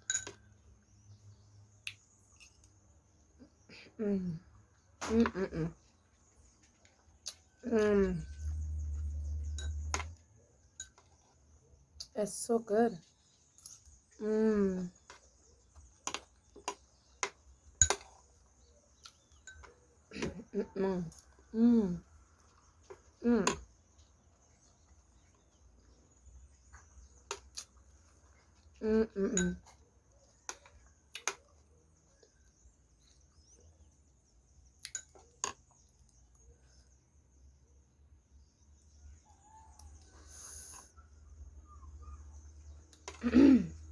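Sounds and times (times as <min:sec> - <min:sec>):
spoon clinking against plate: 0:00.0 - 0:00.5, 0:09.6 - 0:10.2, 0:16.1 - 0:18.2, 0:19.1 - 0:20.4, 0:34.8 - 0:35.6
faint birds chirping: 0:00.0 - 0:43.9.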